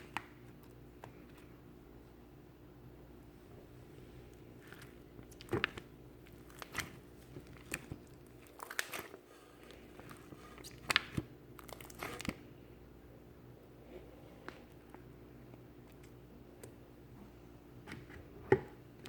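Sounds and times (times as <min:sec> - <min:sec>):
slime squished by hand: 0:04.3 - 0:12.5.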